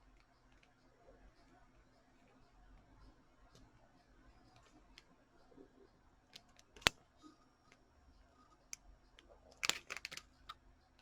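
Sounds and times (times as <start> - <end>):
coin and packaging clicks: 9.6 - 10.3.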